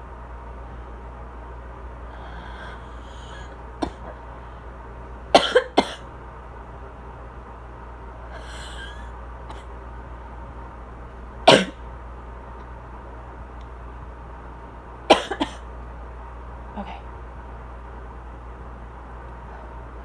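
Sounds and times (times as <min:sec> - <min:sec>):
faint breathy exhales: 0:02.1 - 0:04.6, 0:08.3 - 0:09.7
woman coughing: 0:03.2 - 0:04.1, 0:05.4 - 0:06.1, 0:08.4 - 0:09.6, 0:11.5 - 0:11.8, 0:15.1 - 0:15.6.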